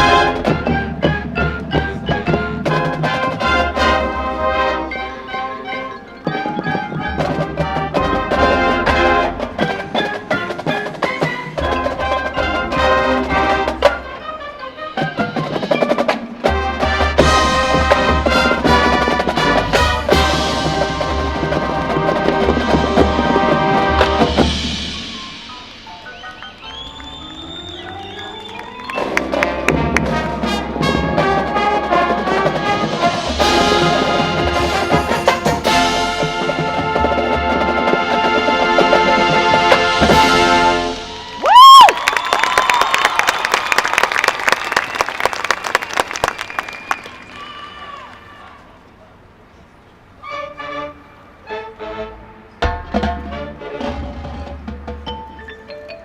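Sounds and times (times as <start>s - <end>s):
marching band playing: 0.0s - 47.4s, 50.3s - 55.8s
drum hits: 16.5s - 26.0s, 29.3s - 41.8s.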